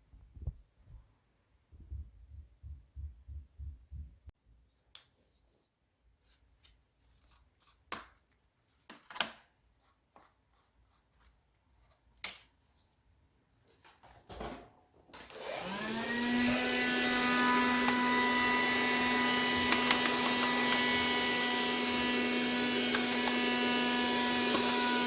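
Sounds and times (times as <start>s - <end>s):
soft low thumping: 1.7s - 4.3s.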